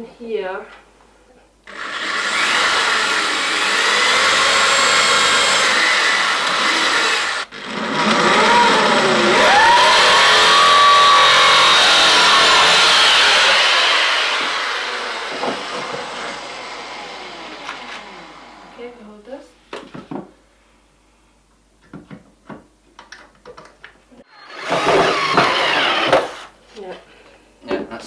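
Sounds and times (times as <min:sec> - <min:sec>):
electric drill boring into wood: 0:01.7 - 0:18.8, 0:24.3 - 0:26.5.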